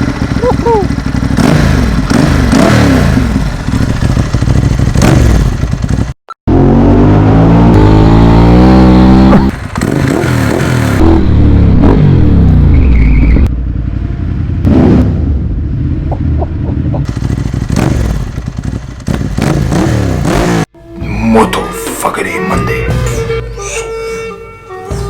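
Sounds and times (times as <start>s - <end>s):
motorcycle engine accelerating: 0.0s - 20.8s
exhaust crackles: 14.6s - 20.7s.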